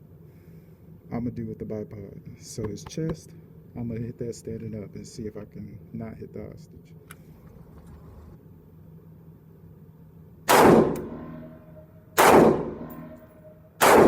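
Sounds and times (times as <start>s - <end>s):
rifle shots with ringing echo: 10.5s - 14.0s.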